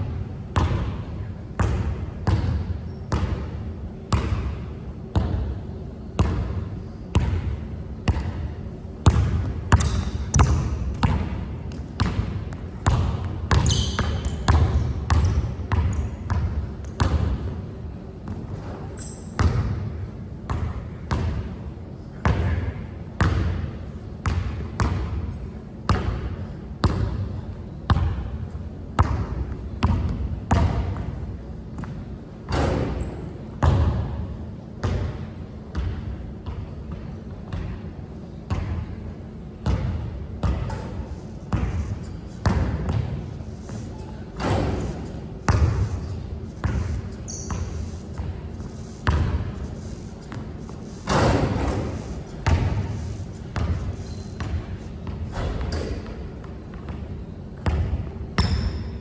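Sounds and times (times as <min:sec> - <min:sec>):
basketball bouncing on court: 0:00.1 - 0:05.6, 0:06.2 - 0:17.5, 0:19.4 - 0:21.5, 0:22.2 - 0:25.3, 0:25.9 - 0:31.2, 0:31.8 - 0:34.2, 0:34.8 - 0:37.8, 0:38.5 - 0:38.9, 0:39.6 - 0:59.0.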